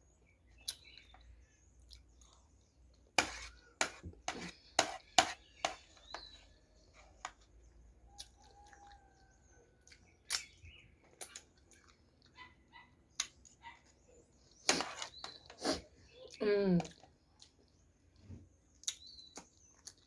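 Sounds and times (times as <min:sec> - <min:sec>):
person chewing: 0:01.8 - 0:06.2, 0:08.1 - 0:13.8, 0:18.7 - 0:20.0.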